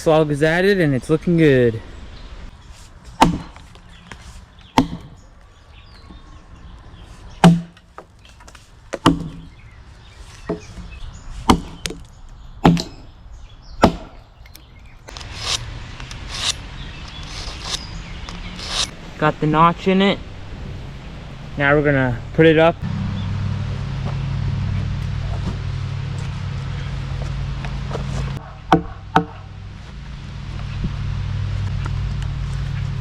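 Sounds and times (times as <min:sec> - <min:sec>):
axe chopping into log: 0:03.2 - 0:03.6, 0:04.8 - 0:05.2, 0:07.4 - 0:07.8, 0:08.9 - 0:09.5, 0:11.5 - 0:13.0, 0:13.8 - 0:14.2, 0:28.7 - 0:29.4.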